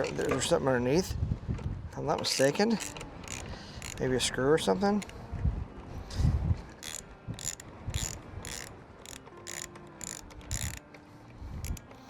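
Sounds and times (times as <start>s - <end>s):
ratchet wrench clicking: 2.3s - 4.2s, 6.8s - 10.8s, 11.6s - 11.9s.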